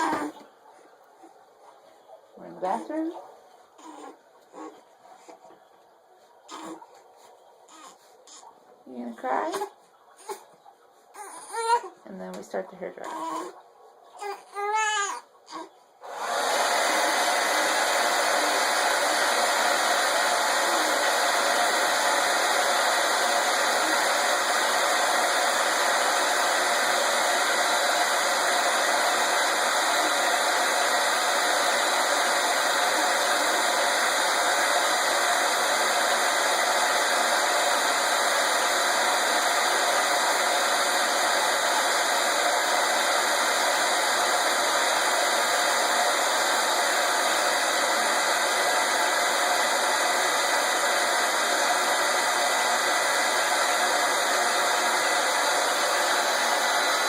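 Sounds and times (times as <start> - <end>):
hair dryer running: 0.0 - 0.4, 2.4 - 3.1, 16.0 - 57.0.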